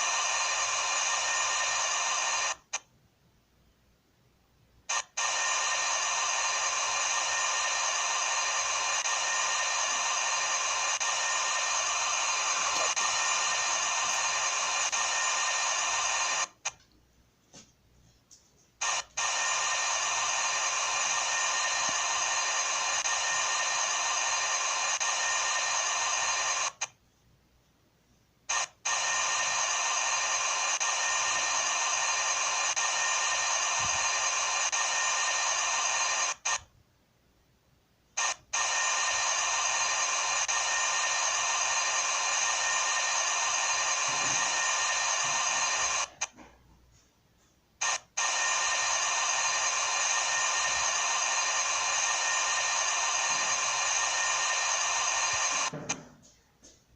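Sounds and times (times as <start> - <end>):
machine high-pitched whine: 4.9 - 16.6, 18.8 - 26.9, 28.5 - 36.6, 38.2 - 46.4, 47.8 - 56.1.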